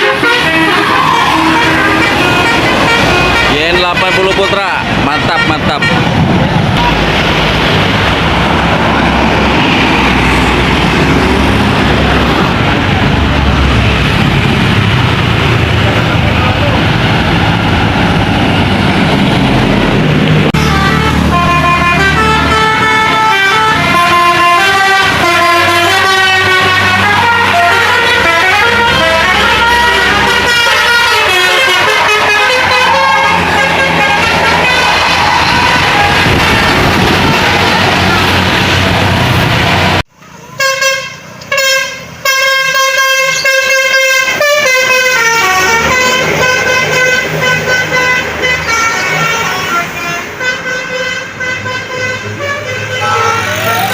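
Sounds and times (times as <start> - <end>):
multi-tone air horn melody: 0.0 - 6.2, 20.5 - 38.4, 40.6 - 53.9
heavy engine: 0.0 - 53.9.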